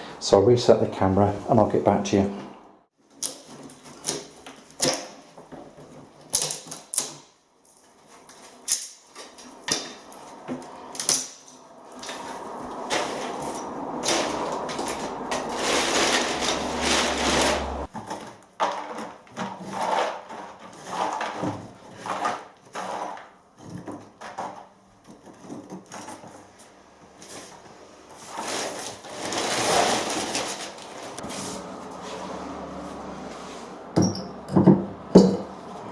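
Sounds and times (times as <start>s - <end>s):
wood scraping cracking and knocking: 3.1s - 27.6s, 28.2s - 31.3s.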